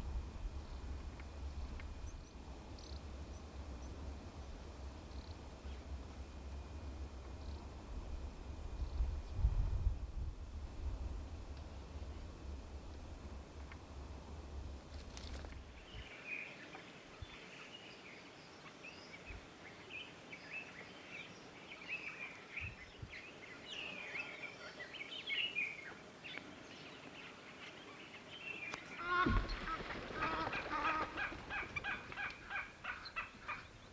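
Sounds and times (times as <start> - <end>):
low steady hum: 0.0 - 16.2, 28.8 - 33.9
birds chirping and calling: 29.1 - 33.9.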